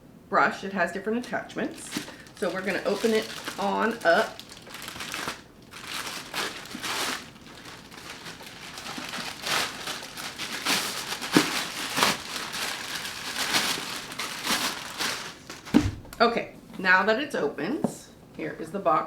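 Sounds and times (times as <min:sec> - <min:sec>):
packaging crinkling and tearing: 0:01.2 - 0:16.0.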